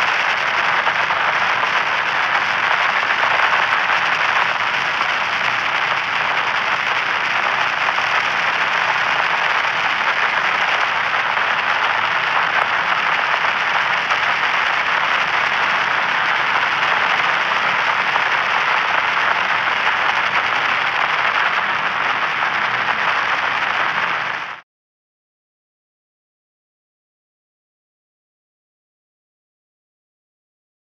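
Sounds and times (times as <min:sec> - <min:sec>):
white noise static hiss: 0:00.0 - 0:24.6.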